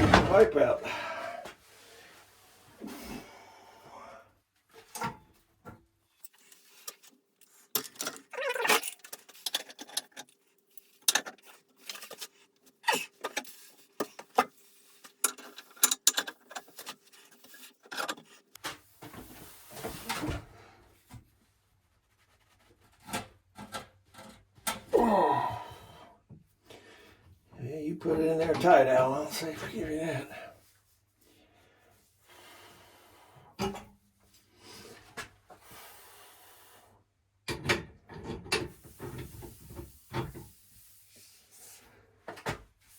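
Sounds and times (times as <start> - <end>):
tools clicking and rattling on fitting: 6.2 - 12.4, 13.0 - 18.4.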